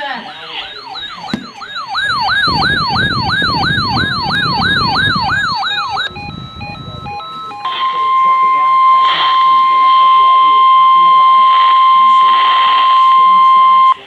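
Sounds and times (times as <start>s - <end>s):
stepped alert beeps: 0.0s - 9.8s
electronic siren yelping: 0.0s - 14.0s.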